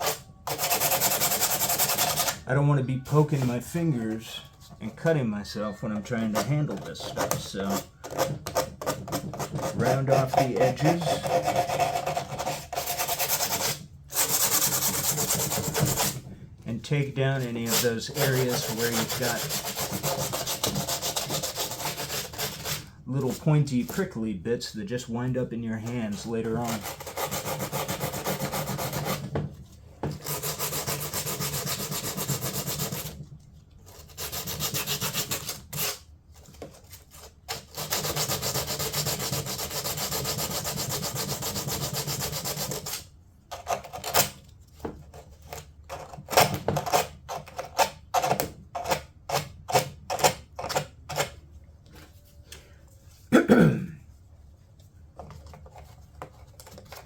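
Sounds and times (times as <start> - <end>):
sandpaper scrubbing: 0.0 - 2.4, 9.5 - 16.2, 17.5 - 23.4, 30.2 - 33.2, 33.9 - 36.0, 37.6 - 42.9.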